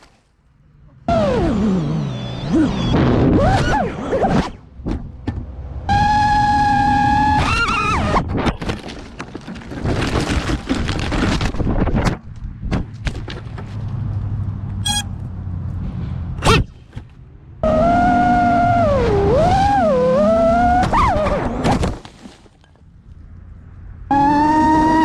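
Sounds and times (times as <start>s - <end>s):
drone motors whining: 0.9s - 4.6s, 5.7s - 8.3s, 17.6s - 21.6s, 24.0s - 25.0s.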